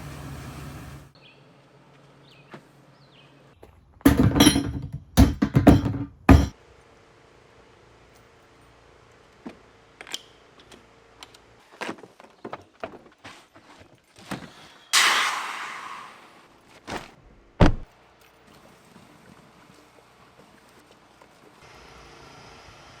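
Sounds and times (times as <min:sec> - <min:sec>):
thuds and rattling handling noises: 0:03.6 - 0:06.5, 0:16.9 - 0:17.9.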